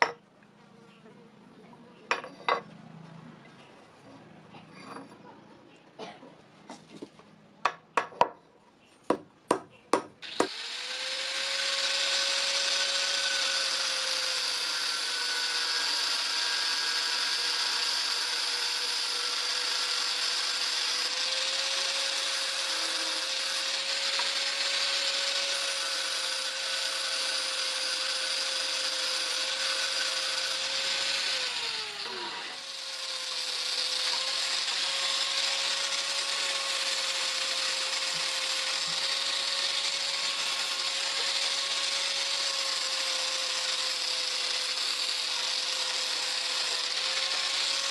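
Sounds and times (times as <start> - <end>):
electric grinder grinding metal: 10.2 - 47.9.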